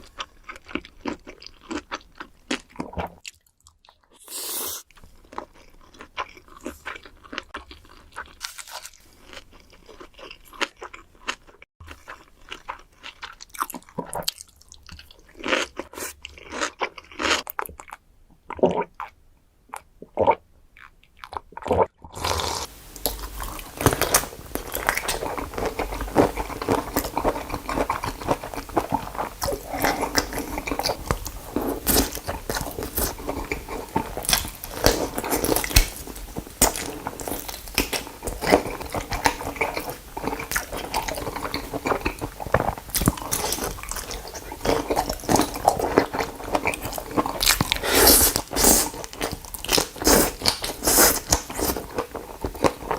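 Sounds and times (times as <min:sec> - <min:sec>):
wet chewing: 0:00.1 - 0:52.9
crunching raw shrimp: 0:19.8 - 0:52.9.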